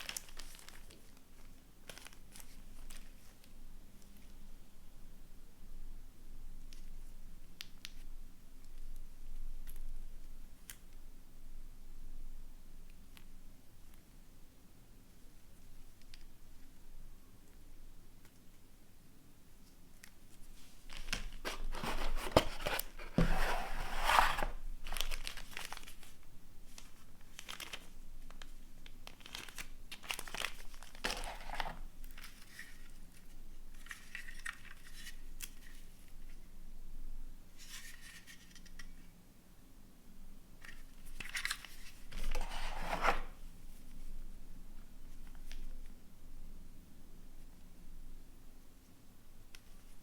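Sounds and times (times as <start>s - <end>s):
paper and plastic wrapping rustling: 0.0s - 3.4s, 20.4s - 33.0s.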